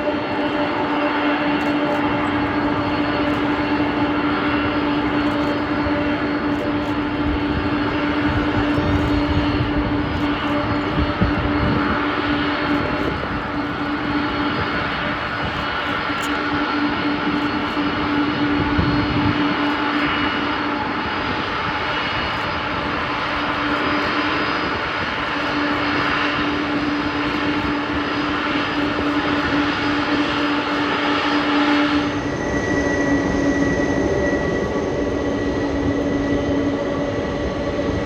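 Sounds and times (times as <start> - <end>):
high steady whine: 0.0 - 38.0
jet engines droning: 0.0 - 38.0.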